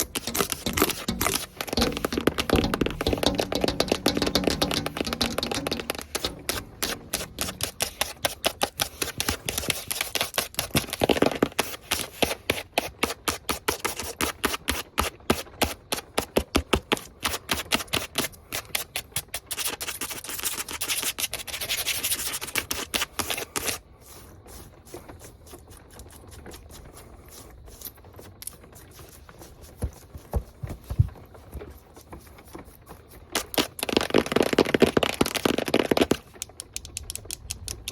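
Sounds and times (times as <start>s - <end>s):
fingernails tapping: 0.0s - 8.5s.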